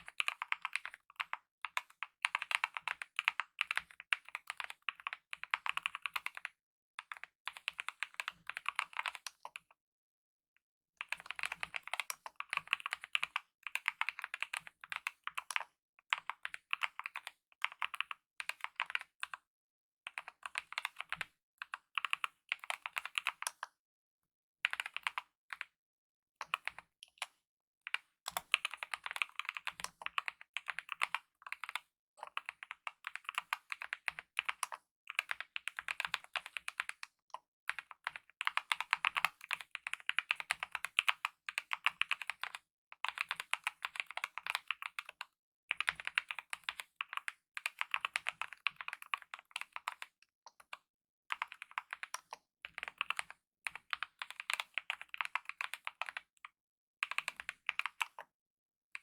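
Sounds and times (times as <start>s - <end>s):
fast mechanical keyboard typing: 0.0s - 6.5s, 11.1s - 19.1s, 28.3s - 37.1s, 37.7s - 50.1s, 51.3s - 56.3s, 57.0s - 58.2s.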